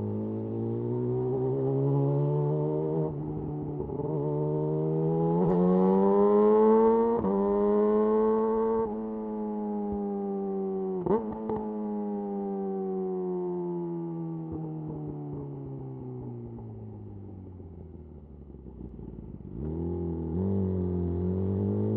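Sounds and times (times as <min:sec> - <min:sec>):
motorcycle engine revving: 0:00.0 - 0:12.0, 0:18.4 - 0:21.9.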